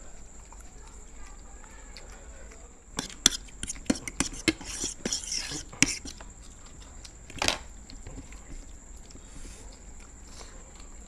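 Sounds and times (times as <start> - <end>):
dishes and cutlery clinking: 3.0 - 6.2.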